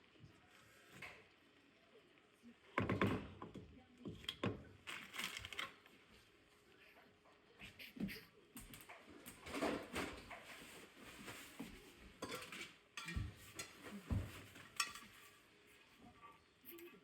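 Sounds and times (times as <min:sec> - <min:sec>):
spoon scraping and knocking pot: 0:12.2 - 0:15.4.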